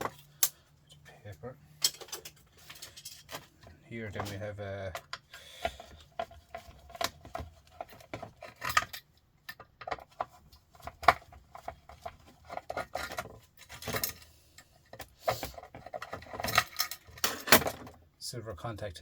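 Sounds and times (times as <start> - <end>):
small metal parts clinking: 1.8 - 3.5, 7.8 - 10.2, 11.0 - 14.3, 15.3 - 17.9.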